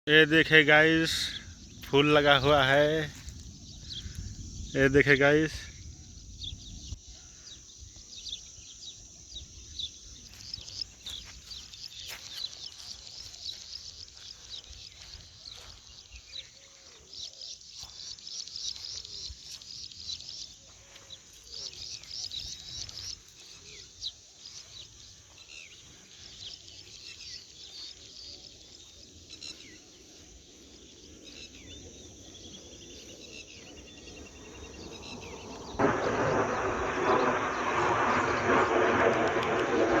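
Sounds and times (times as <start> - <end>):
birds chirping: 0.0 - 40.0
steady low rumble: 31.8 - 40.0.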